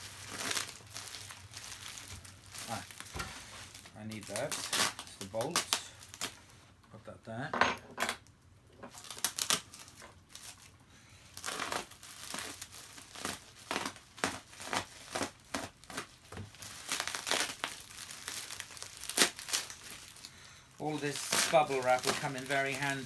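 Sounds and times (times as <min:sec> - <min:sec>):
bubble wrap crinkling: 0:00.0 - 0:06.6, 0:08.9 - 0:23.0.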